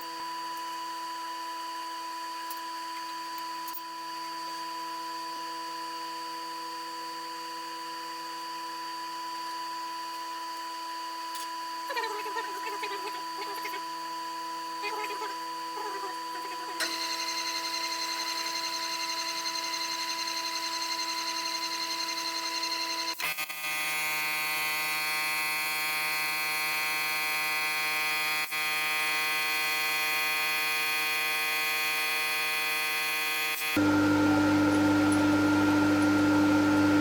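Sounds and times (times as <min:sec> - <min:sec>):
milling machine whining: 0:32.9 - 0:37.0.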